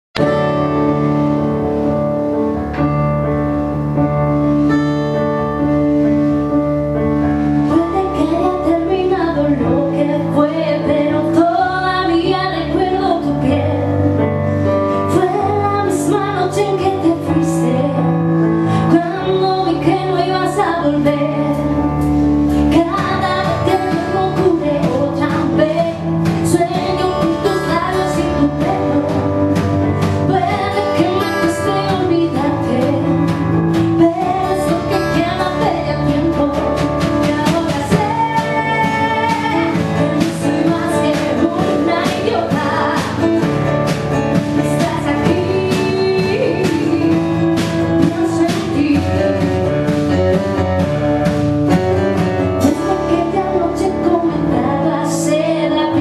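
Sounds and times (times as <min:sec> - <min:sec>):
instrumental music: 0:00.2 - 0:56.0
person singing: 0:44.6 - 0:49.6.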